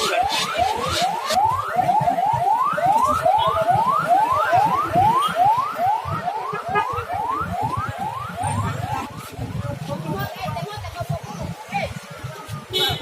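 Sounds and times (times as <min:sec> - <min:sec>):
siren on fast yelp: 0:00.0 - 0:10.0
second siren: 0:00.0 - 0:10.1.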